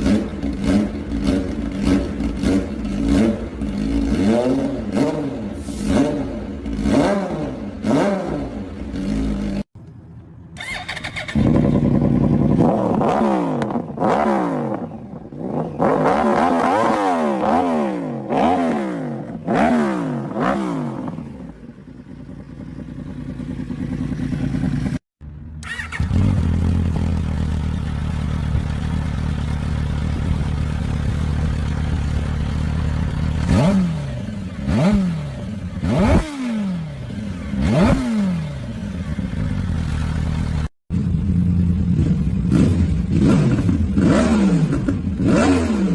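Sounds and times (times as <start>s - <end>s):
motorcycle engine revving: 0.0s - 9.8s, 10.6s - 45.9s
motorcycle engine idling: 8.7s - 12.8s, 21.0s - 34.7s, 38.6s - 44.0s.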